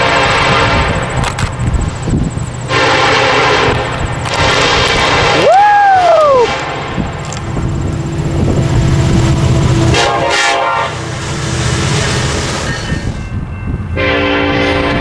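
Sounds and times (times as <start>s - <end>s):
locomotive air horn chord: 0.0s - 1.2s, 2.7s - 11.2s, 13.9s - 15.0s
low rumble of passing train: 0.0s - 15.0s.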